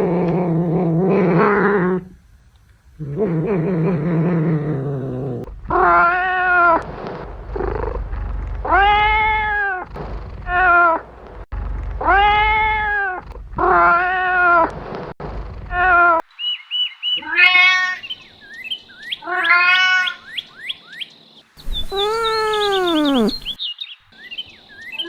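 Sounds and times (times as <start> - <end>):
kitten meowing: 21.6 - 23.6
low rough call: 21.6 - 23.6.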